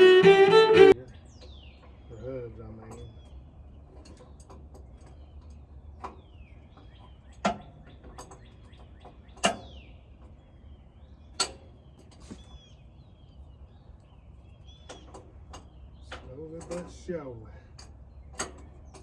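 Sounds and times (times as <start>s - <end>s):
birds chirping: 0.0s - 1.0s.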